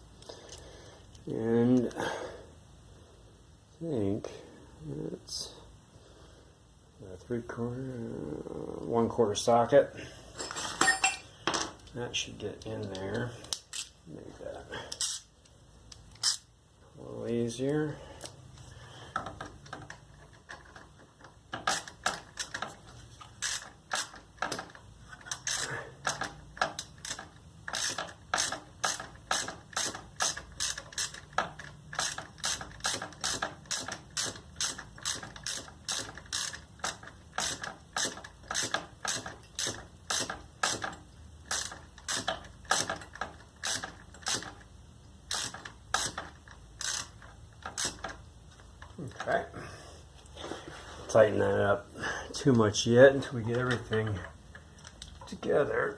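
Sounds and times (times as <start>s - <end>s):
socket ratchet clicking: 15.9s - 16.5s, 23.4s - 44.7s, 45.3s - 48.2s.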